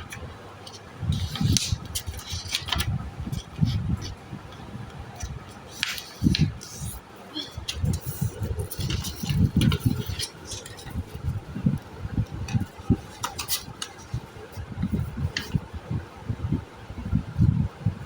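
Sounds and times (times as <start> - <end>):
paper being folded: 0.0 - 4.2, 5.1 - 15.6
paper crinkling clicks: 0.0 - 4.2, 5.2 - 7.0, 7.6 - 11.0, 12.5 - 14.2.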